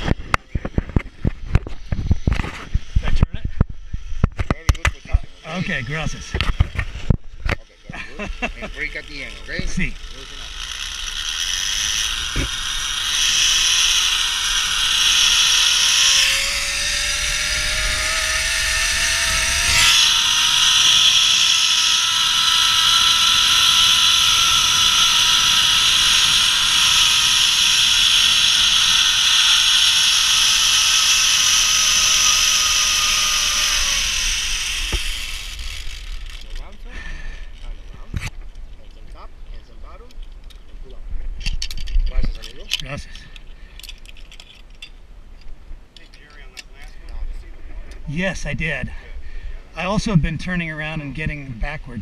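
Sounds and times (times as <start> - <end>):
zipline pulleys whirring: 5.3 - 38.0.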